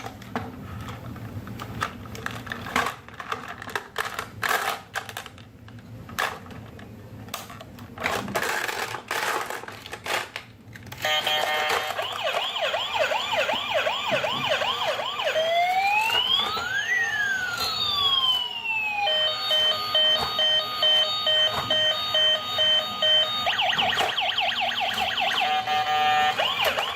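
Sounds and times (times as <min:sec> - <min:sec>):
electronic siren cycling tones: 0:11.0 - 0:26.9.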